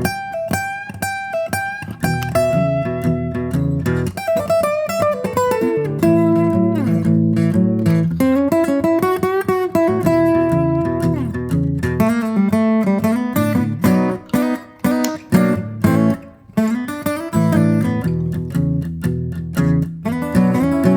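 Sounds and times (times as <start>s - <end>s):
plucked guitar music: 0.0s - 20.9s.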